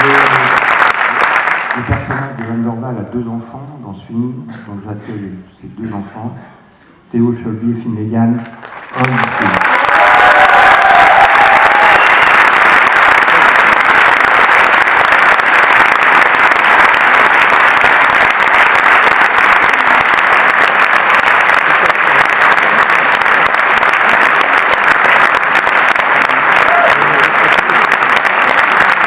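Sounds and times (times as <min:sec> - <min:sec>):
audience applauding: 0:00.0 - 0:02.6, 0:08.5 - 0:29.0.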